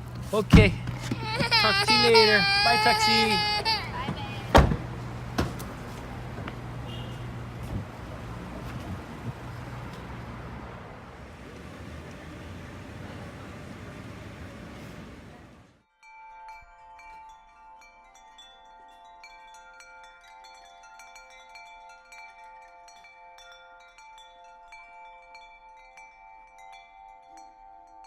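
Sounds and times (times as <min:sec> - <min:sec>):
wind or road noise: 0:00.0 - 0:15.8
chimes ringing: 0:01.1 - 0:04.6.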